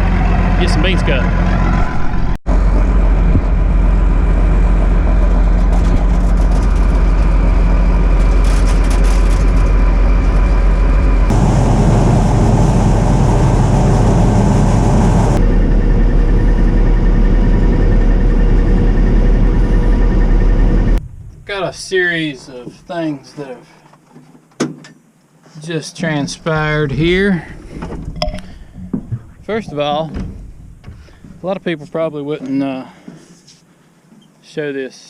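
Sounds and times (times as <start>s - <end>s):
combine harvester running: 0.0s - 21.0s.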